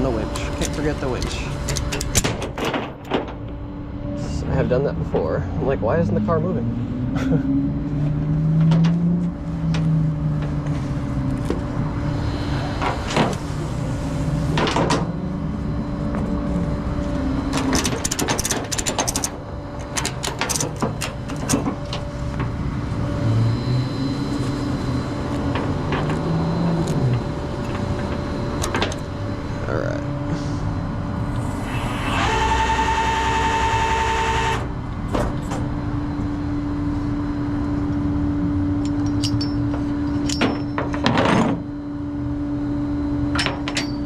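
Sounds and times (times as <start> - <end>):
metal clanks and rattles: 0.0 - 3.6, 17.5 - 22.6, 38.8 - 41.6, 43.3 - 44.0
hydraulic whine: 0.0 - 44.0
tow truck engine: 0.0 - 44.0.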